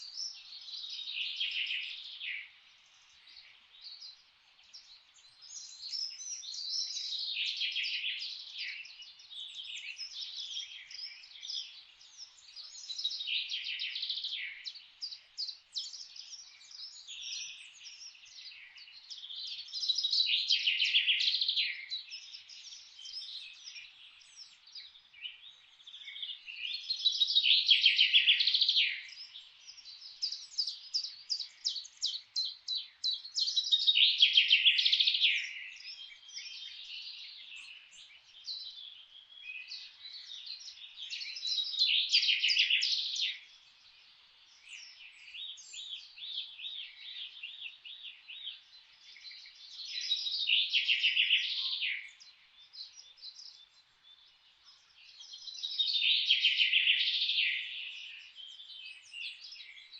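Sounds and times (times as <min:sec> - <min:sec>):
songbirds singing and chirping: 0:00.0 - 0:59.9.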